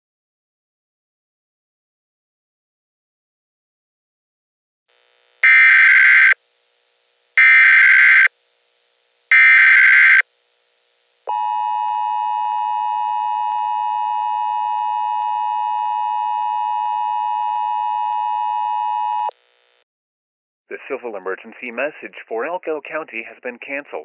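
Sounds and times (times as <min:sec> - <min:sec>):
harsh digital data bursts: 0:05.4 - 0:06.4, 0:07.4 - 0:08.3, 0:09.3 - 0:10.2.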